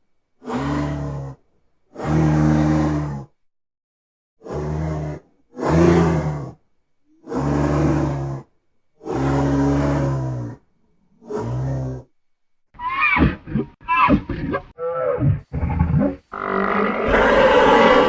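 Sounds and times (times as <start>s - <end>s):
rhinoceros low calls: 16.4s - 18.0s.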